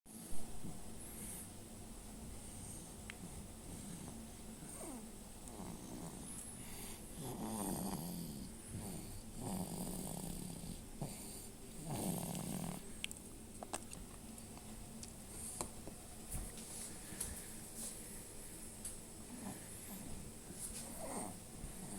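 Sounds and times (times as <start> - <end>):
child snoring: 3.9 - 12.8, 20.9 - 21.9.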